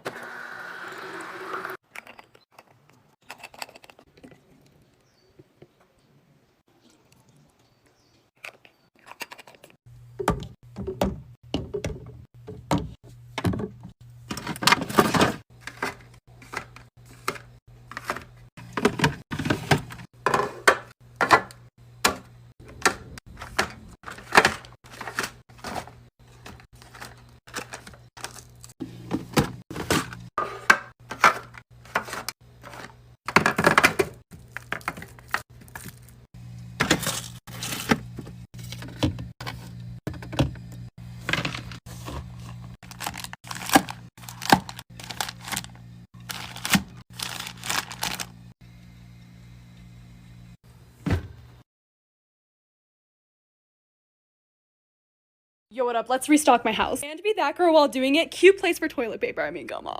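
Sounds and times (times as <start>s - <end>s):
containers knocking and clattering: 10.2s - 21.5s, 29.1s - 36.0s.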